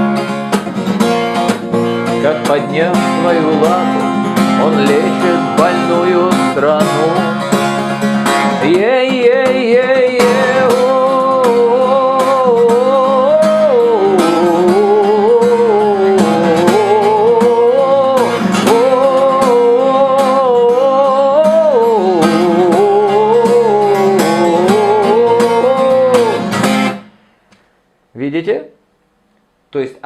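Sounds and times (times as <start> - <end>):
acoustic guitar strumming: 0.0 - 28.1
man singing wordless melody: 2.2 - 7.7, 8.5 - 26.5.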